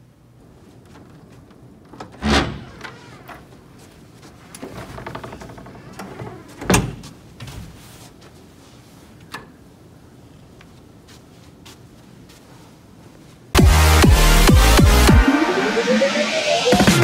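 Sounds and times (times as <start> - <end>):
handling noise: 0.1 - 8.8.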